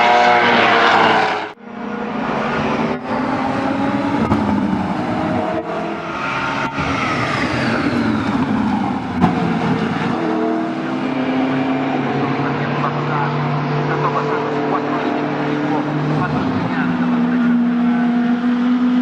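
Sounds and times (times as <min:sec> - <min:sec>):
race car engines running hard: 0:01.6 - 0:19.0
car passing by: 0:02.2 - 0:12.3.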